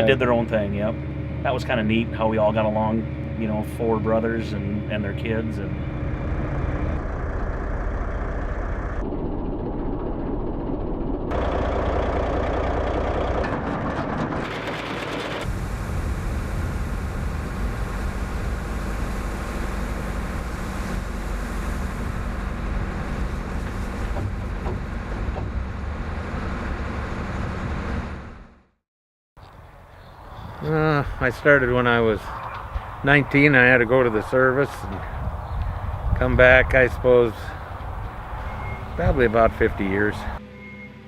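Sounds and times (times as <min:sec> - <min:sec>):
vehicle engine running: 0:00.0 - 0:28.8, 0:30.7 - 0:41.0.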